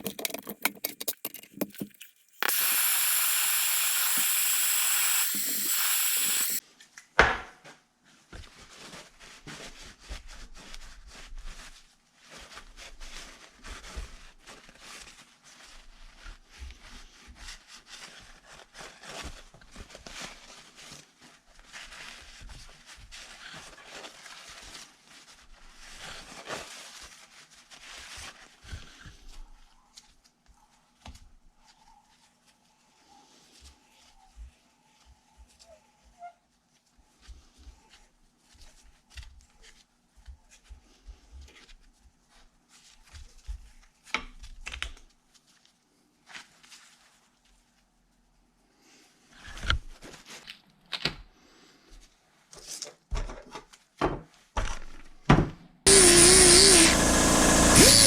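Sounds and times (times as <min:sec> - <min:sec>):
small parts scraping and clicking: 0:00.0 - 0:06.6
loud steady hiss: 0:02.4 - 0:06.6.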